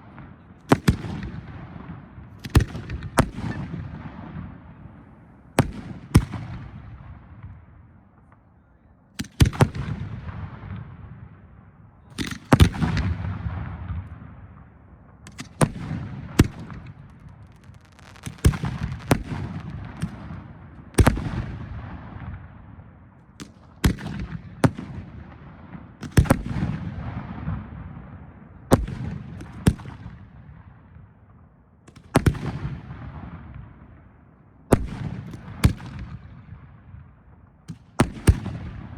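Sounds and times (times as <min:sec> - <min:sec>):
firework shells bursting: 0:17.0 - 0:20.3.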